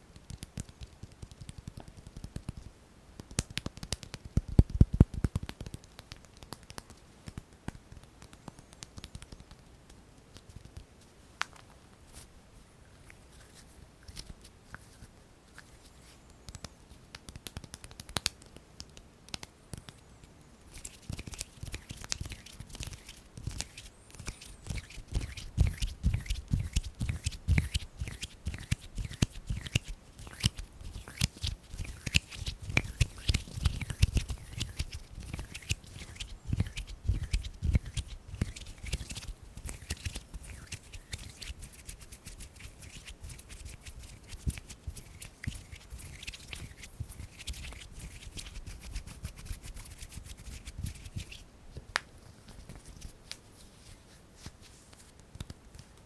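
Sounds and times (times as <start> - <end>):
skin rubbing: 20.7 - 51.4.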